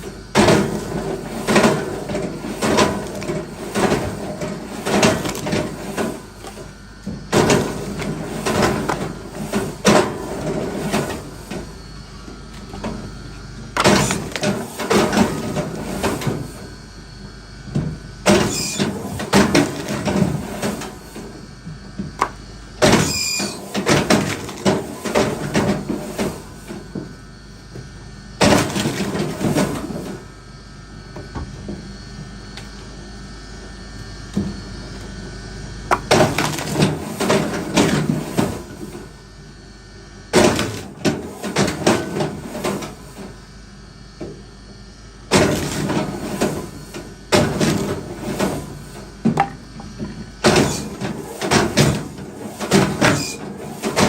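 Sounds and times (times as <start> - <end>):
sharp knocks and clattering: 49.2 - 50.8.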